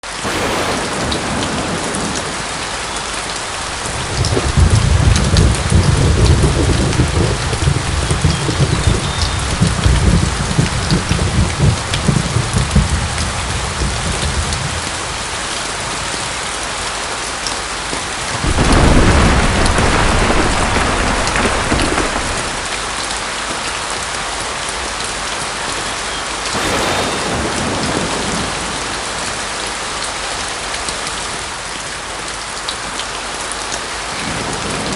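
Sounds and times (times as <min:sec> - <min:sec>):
rolling thunder: 0:00.0 - 0:14.9, 0:26.6 - 0:29.2
steady rain: 0:00.0 - 0:34.9.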